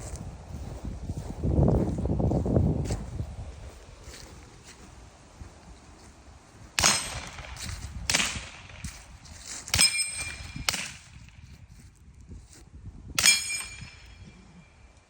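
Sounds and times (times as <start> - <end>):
metallic ring of steel target: 6.8 - 8.7, 9.6 - 11.4, 13.2 - 14.8
suppressed gunshots: 6.8 - 8.8.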